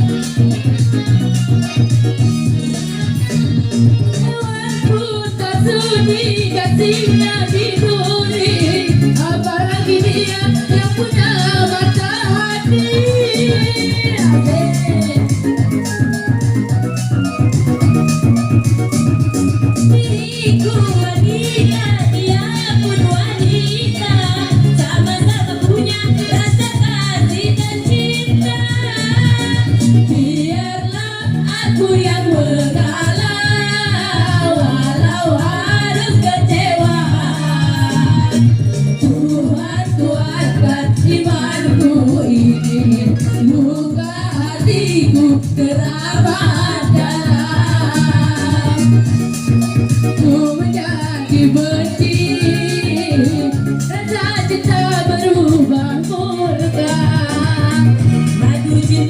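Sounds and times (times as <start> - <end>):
person singing: 0.0 - 15.7
electronic keyboard accompaniment: 0.0 - 59.0
repeating bass beat: 0.0 - 59.0.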